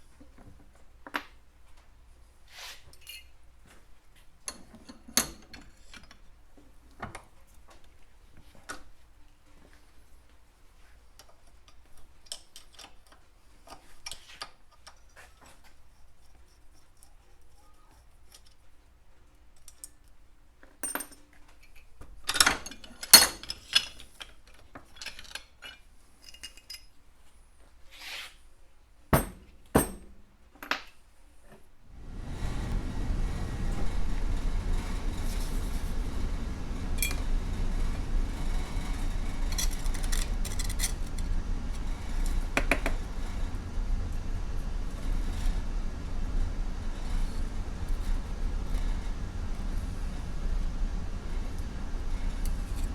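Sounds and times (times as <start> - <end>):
steady noise: 31.9 - 52.9.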